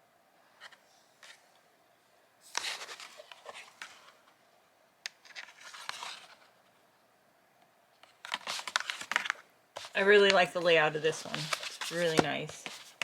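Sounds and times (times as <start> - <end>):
cardboard and plastic rustling: 2.5 - 4.3, 5.2 - 6.5, 8.0 - 13.0.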